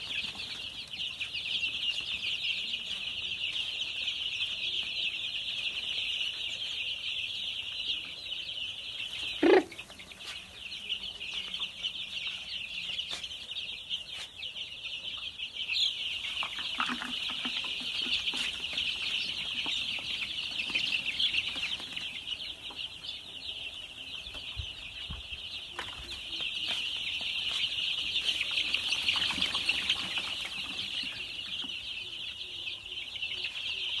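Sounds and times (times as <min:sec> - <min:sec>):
chicks peeping: 0:00.0 - 0:34.0
lower bird calls: 0:09.3 - 0:09.9.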